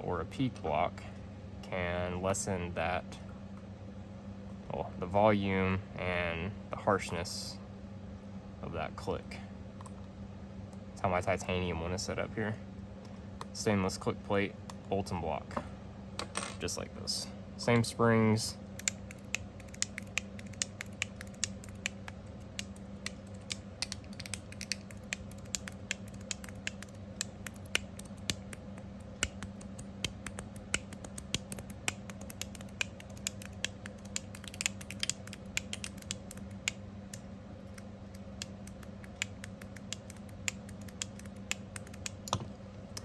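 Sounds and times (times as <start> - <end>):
fidget slider clicking: 18.8 - 36.8.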